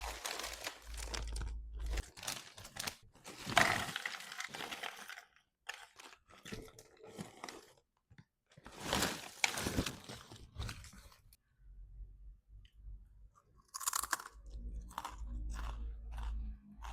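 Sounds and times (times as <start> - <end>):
crinkling and crunching: 0.0 - 11.4.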